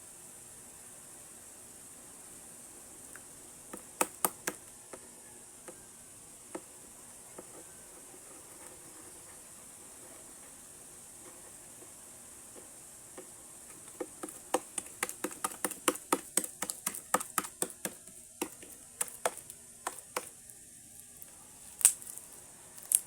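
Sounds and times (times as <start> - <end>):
wet clicks of kneaded slime: 14.6 - 20.3, 21.8 - 22.2.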